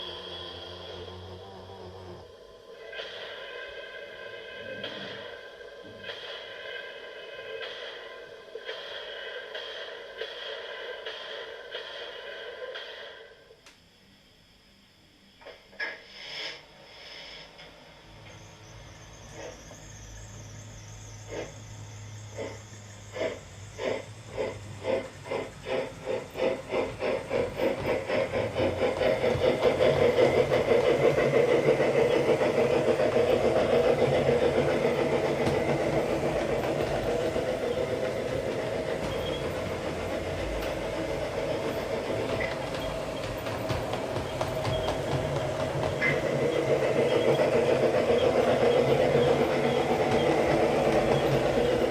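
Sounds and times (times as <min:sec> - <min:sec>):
steam hissing: 0:00.0 - 0:13.6, 0:15.4 - 0:51.9
steam locomotive chuffing: 0:00.0 - 0:13.6, 0:15.5 - 0:51.9.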